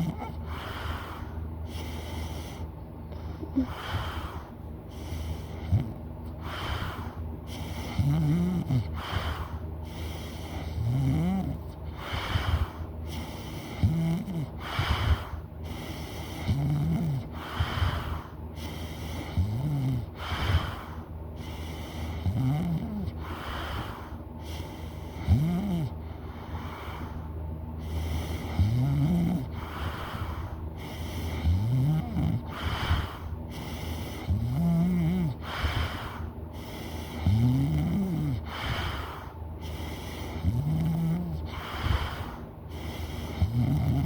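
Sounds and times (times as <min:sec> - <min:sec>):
person snoring loudly: 0:00.0 - 0:00.7, 0:06.6 - 0:09.6, 0:10.4 - 0:12.8, 0:13.7 - 0:15.3, 0:16.3 - 0:18.2, 0:19.2 - 0:20.8, 0:22.1 - 0:24.0, 0:25.2 - 0:26.0, 0:28.1 - 0:36.2, 0:37.0 - 0:39.3, 0:40.3 - 0:42.4, 0:43.0 - 0:44.0.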